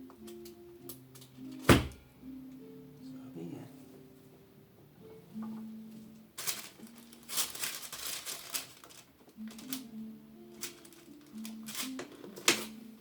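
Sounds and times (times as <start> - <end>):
soft background music: 0.0 - 13.0
crinkling and rustling: 5.4 - 12.9.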